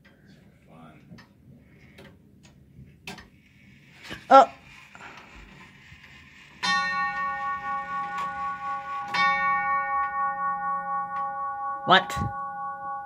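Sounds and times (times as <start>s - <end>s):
clock chime tubes ringing: 6.6s - 13.0s.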